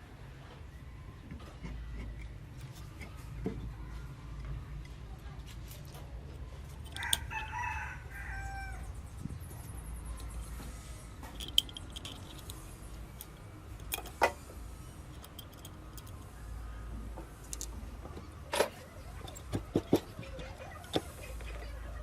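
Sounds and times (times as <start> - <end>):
tools clicking and knocking: 4.8 - 7.4, 11.2 - 14.5, 15.1 - 16.4, 17.2 - 21.5.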